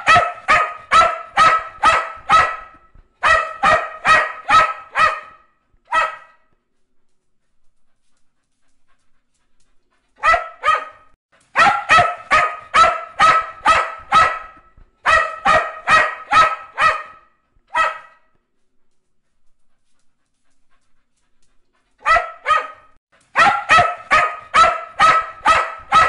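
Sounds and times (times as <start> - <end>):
dog barking: 0.0 - 6.5, 10.2 - 18.3, 22.0 - 26.0.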